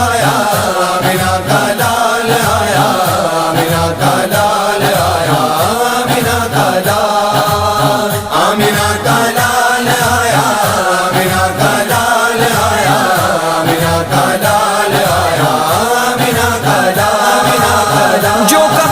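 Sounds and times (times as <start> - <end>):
voices chanting a melody: 12.4 - 18.9.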